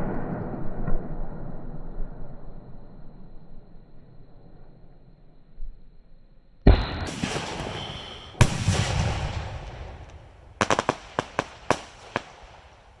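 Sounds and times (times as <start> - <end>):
rumbling echo: 0.0 - 5.7, 6.7 - 13.0
fireworks bangs: 6.6 - 13.0
sharp cracks: 6.6 - 13.0.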